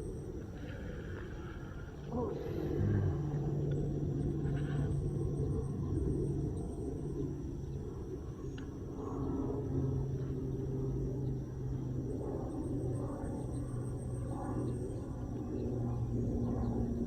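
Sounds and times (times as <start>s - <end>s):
insect chirping: 0.0s - 17.0s
low outdoor rumble: 0.0s - 17.0s.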